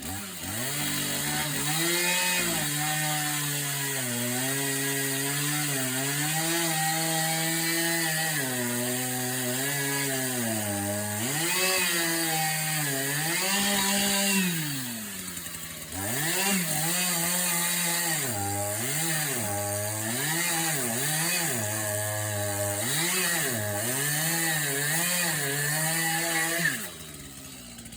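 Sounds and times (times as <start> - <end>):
chainsaw cutting into tree: 0.0 - 27.9.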